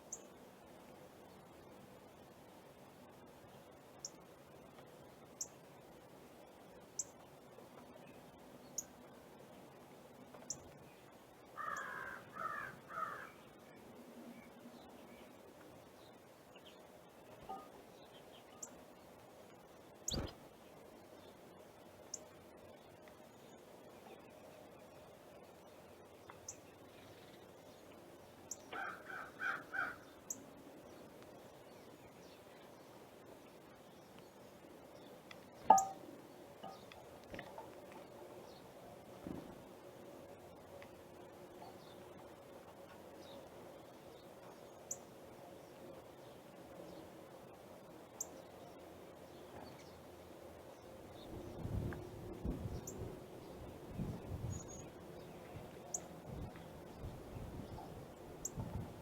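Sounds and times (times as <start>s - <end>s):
crow cawing: 11.6s - 13.4s, 28.7s - 30.1s
small bird chirping: 20.0s - 20.4s, 35.6s - 36.0s, 54.0s - 57.1s.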